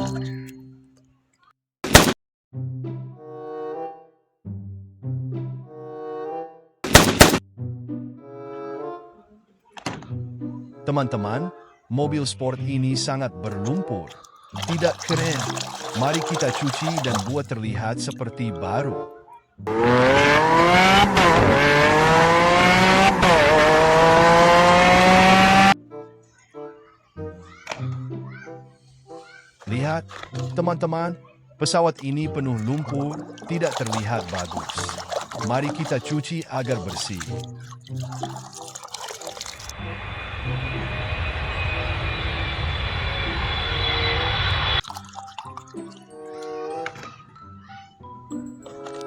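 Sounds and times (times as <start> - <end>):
racing car engine accelerating: 19.7 - 25.8
airplane engine drone: 39.8 - 44.8.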